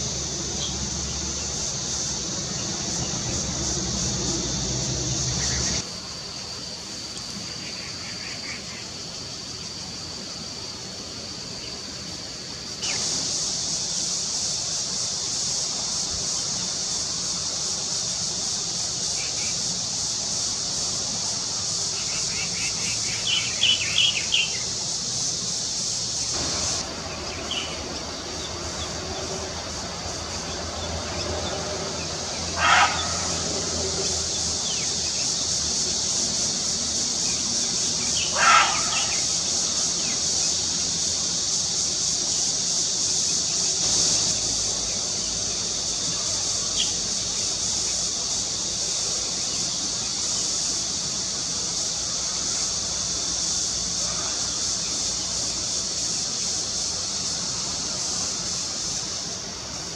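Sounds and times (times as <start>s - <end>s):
loud bird calls: 0.0s - 5.9s, 21.9s - 24.8s, 26.3s - 41.3s
insect chorus drone: 0.0s - 59.9s.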